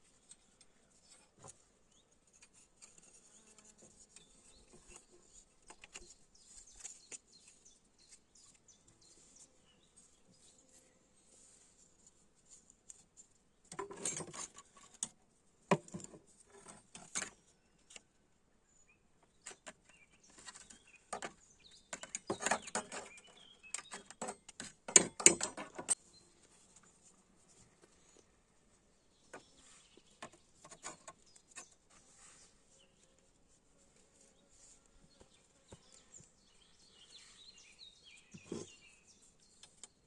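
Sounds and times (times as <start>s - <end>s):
objects clicking and scraping: 12.8s - 18.0s, 19.3s - 26.0s, 29.3s - 32.2s, 38.2s - 40.0s.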